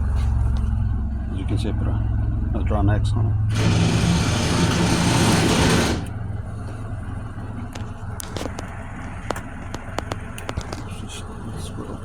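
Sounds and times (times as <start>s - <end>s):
steady low hum: 0.0s - 12.0s
loud rushing hiss: 3.5s - 6.1s
rotary selector clicks: 7.8s - 10.9s.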